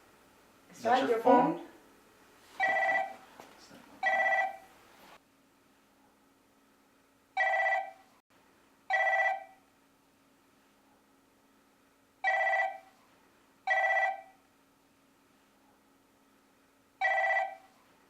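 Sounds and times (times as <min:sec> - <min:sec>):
phone ringing: 0:02.6 - 0:03.3, 0:04.0 - 0:04.7, 0:07.4 - 0:08.1, 0:08.9 - 0:09.6, 0:12.2 - 0:13.0, 0:13.6 - 0:14.4, 0:17.0 - 0:17.8.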